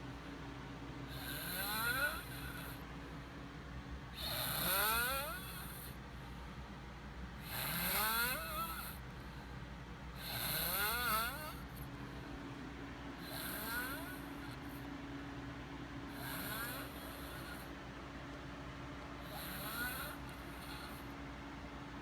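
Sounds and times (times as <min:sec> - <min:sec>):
faint steady hum: 0:00.0 - 0:22.0
boy snoring: 0:01.1 - 0:02.8, 0:04.2 - 0:05.9, 0:07.5 - 0:09.0, 0:10.2 - 0:11.6, 0:13.2 - 0:14.3, 0:16.2 - 0:17.6, 0:19.3 - 0:21.0.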